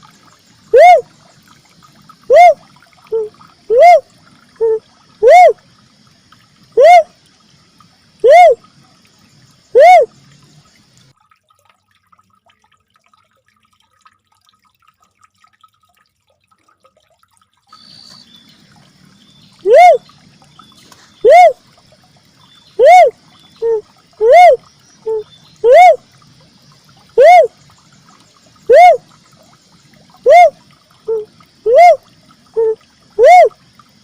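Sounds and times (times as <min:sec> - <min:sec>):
dove hooting: 0:00.7 - 0:01.1, 0:02.3 - 0:04.0, 0:04.6 - 0:05.6, 0:06.8 - 0:07.1, 0:08.2 - 0:08.6, 0:09.7 - 0:10.1, 0:19.6 - 0:20.0, 0:21.2 - 0:21.6, 0:22.8 - 0:26.0, 0:27.2 - 0:27.5, 0:28.7 - 0:29.0, 0:30.2 - 0:32.0, 0:32.6 - 0:33.6.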